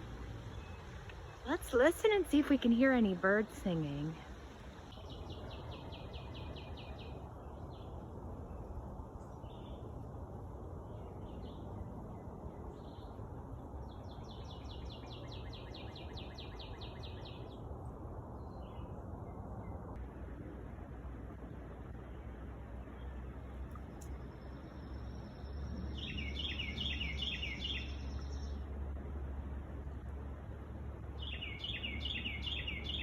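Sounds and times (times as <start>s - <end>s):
low background rumble: 0.0s - 33.0s
bird chirps: 24.0s - 28.6s, 31.2s - 33.0s
songbird trilling: 25.8s - 28.6s, 31.2s - 33.0s.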